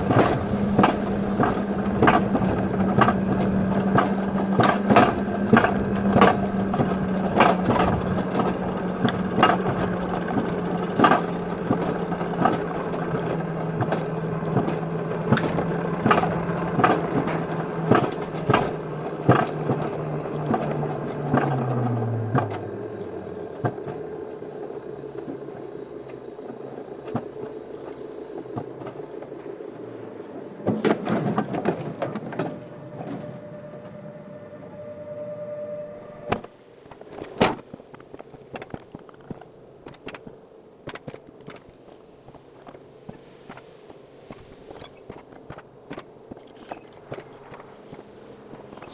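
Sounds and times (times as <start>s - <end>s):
clicks and knocks on track: 0.0s - 22.9s
coaster sled mechanical hum: 0.0s - 48.9s.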